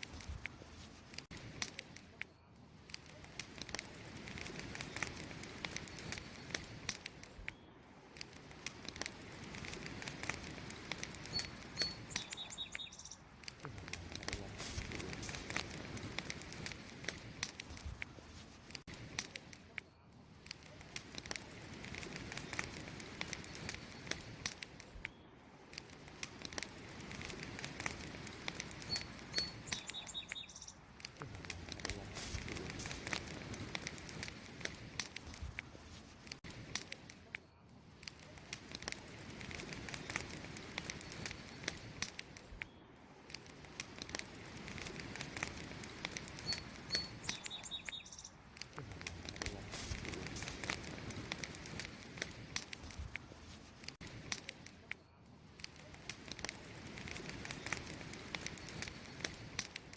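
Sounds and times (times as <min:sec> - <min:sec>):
wood fire crackling: 0:00.0 - 0:59.9
faint high chirp: 0:11.3 - 0:13.2, 0:28.8 - 0:30.8, 0:46.4 - 0:48.4.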